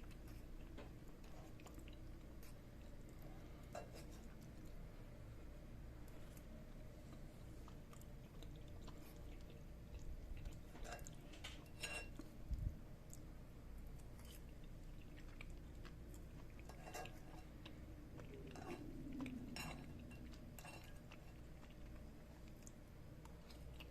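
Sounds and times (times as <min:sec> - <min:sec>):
person chewing quietly: 0:00.0 - 0:23.9
cutlery clinking on a plate: 0:10.8 - 0:12.2.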